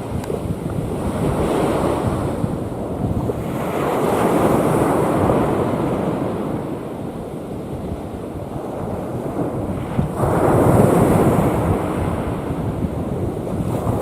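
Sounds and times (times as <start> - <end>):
sea waves breaking on shore: 0.0 - 14.0
wind buffeting microphone: 0.0 - 14.0.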